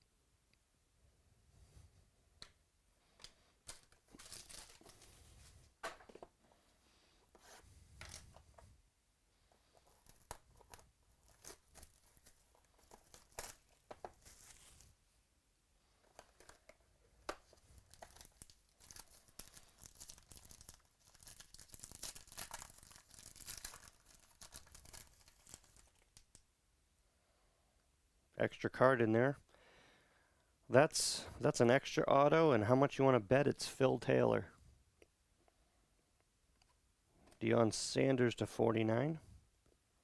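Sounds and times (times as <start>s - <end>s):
cards clicking and rustling: 3.2s - 5.1s, 9.6s - 14.8s, 16.0s - 26.4s
packaging tearing and crinkling: 3.7s - 5.1s, 9.8s - 14.8s, 17.7s - 26.4s.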